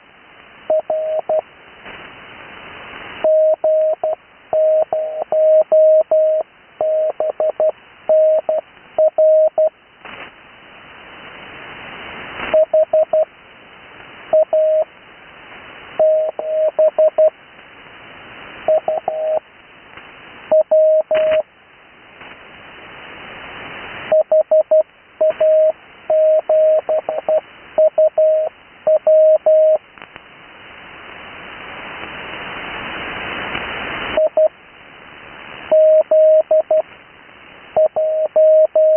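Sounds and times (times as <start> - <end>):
radio receiver hiss: 0.0 - 38.9
morse code beeps: 0.7 - 1.4, 3.2 - 9.7, 12.6 - 13.3, 14.4 - 14.9, 16.0 - 17.3, 18.7 - 19.4, 20.5 - 21.4, 24.1 - 29.8, 34.2 - 34.5, 35.7 - 36.8, 37.8 - 38.9.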